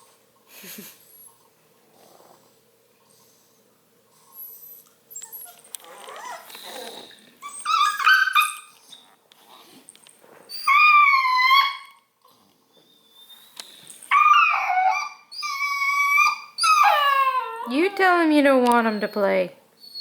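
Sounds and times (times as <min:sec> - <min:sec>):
puppy whining: 0:04.2 - 0:20.0.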